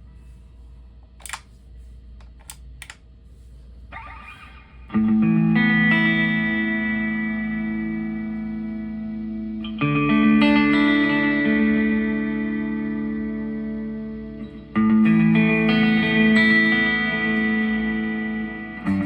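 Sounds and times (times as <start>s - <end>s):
sharp clicks: 1.2s - 1.5s, 2.2s - 3.0s
distorted electric guitar chord: 5.0s - 19.0s.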